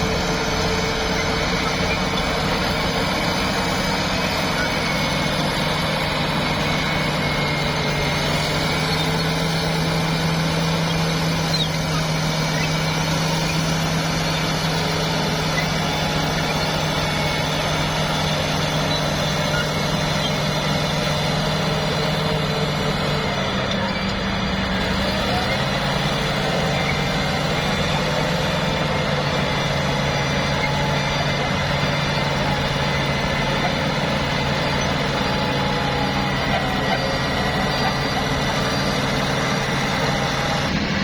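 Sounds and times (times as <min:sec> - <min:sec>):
heavy diesel engine running: 0:00.0 - 0:41.0.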